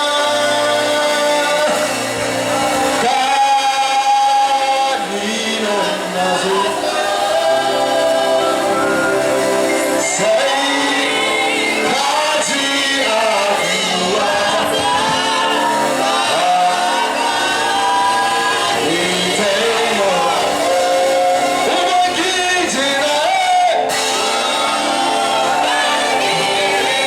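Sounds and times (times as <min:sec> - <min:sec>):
many voices singing: 0:00.0 - 0:27.0
sustained instrumental tones: 0:00.0 - 0:27.0.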